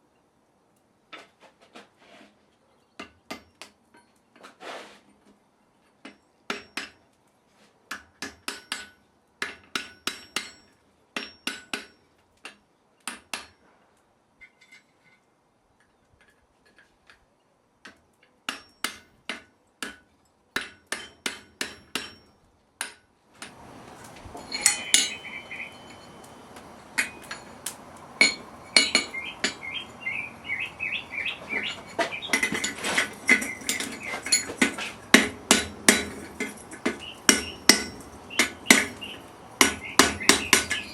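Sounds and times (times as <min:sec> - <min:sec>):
hammer striking iron on anvil: 0:20.6 - 0:22.2, 0:22.8 - 0:40.9.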